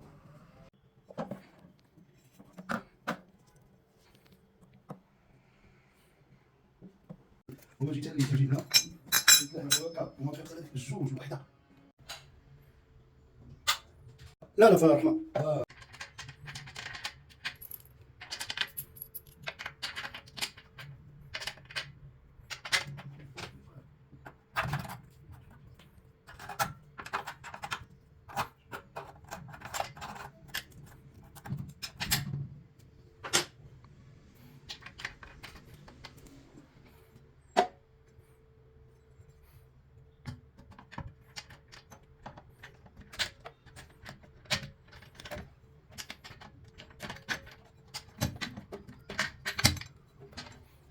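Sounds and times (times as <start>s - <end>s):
metallic clinks and knocks: 8.6s - 10.0s.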